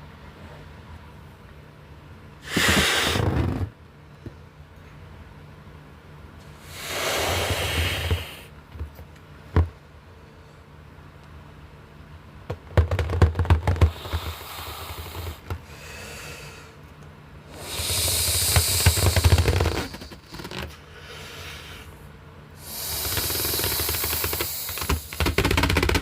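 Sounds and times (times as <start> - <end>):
cartoon air hiss with rattle: 2.4 - 3.3, 6.6 - 8.5, 17.5 - 21.9, 22.6 - 25.9.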